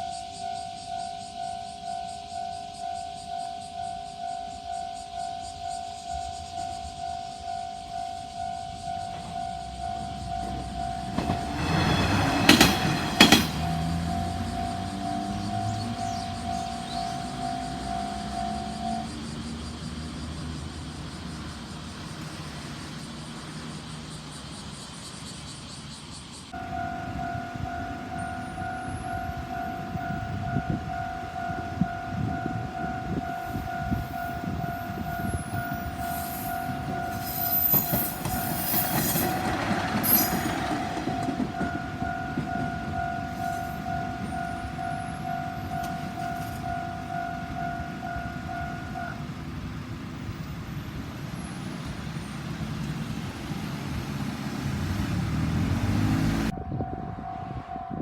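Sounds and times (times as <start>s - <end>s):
level-crossing warning bell: 0.0s - 24.6s, 26.5s - 58.0s
diesel railcar passing: 0.0s - 58.0s
wheel noise: 26.6s - 56.6s.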